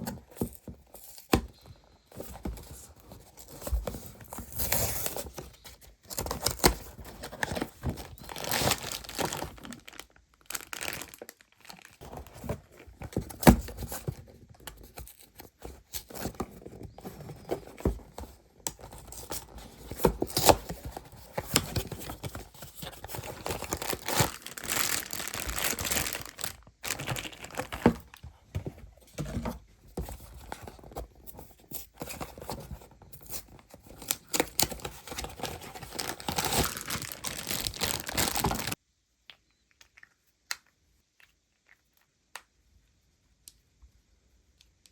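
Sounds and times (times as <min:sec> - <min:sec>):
packaging tearing: 0:06.2 - 0:12.1, 0:21.5 - 0:28.2, 0:34.0 - 0:38.8
plastic wrapping crinkling: 0:06.2 - 0:12.6, 0:20.4 - 0:28.3, 0:34.0 - 0:38.8.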